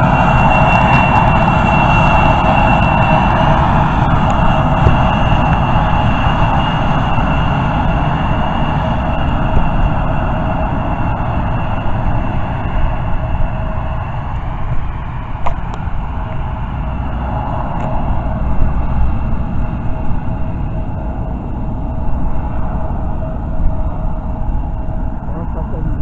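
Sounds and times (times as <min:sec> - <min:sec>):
jet engines whining: 0:00.0 - 0:26.0.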